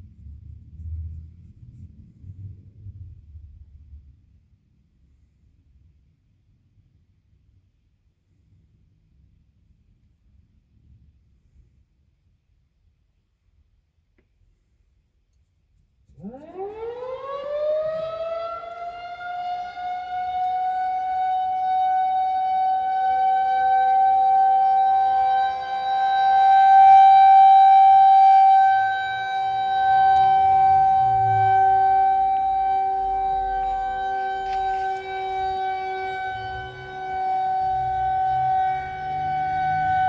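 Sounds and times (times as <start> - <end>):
rotating warning siren wailing: 16.1 - 40.0.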